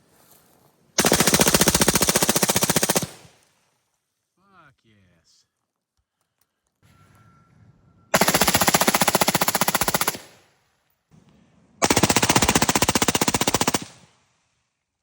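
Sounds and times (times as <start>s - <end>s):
rifle firing rapid shots: 1.0s - 3.4s, 8.2s - 10.4s, 11.8s - 14.1s.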